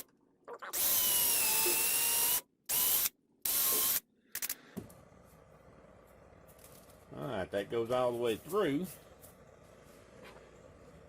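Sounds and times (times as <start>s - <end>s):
electric drill whining: 0.8s - 4.0s.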